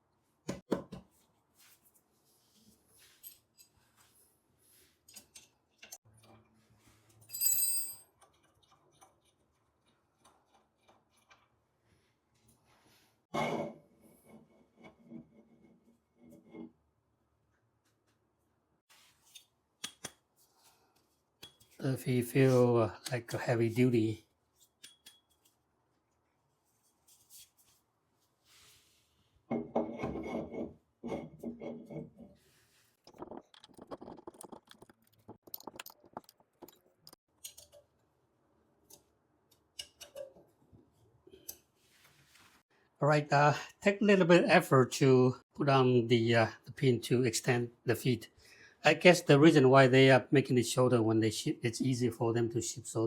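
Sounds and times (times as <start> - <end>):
metal rubbing and scraping: 30.1 - 37.2.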